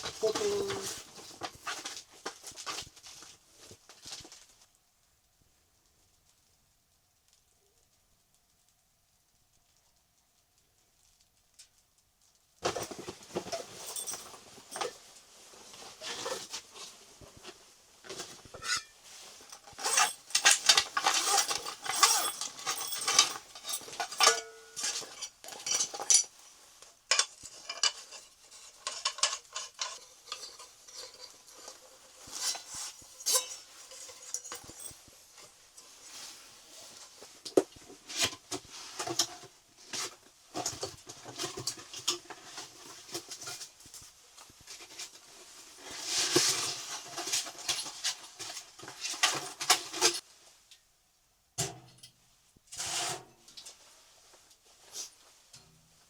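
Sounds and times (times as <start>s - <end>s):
cookware clinking and clattering: 18.6s - 19.0s, 19.8s - 26.4s, 27.1s - 31.8s, 33.2s - 35.0s.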